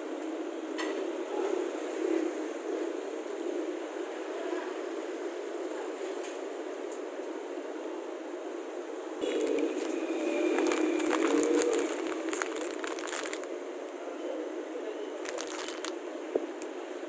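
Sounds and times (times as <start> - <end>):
crinkling and crackling: 9.2 - 13.6, 15.2 - 16.8.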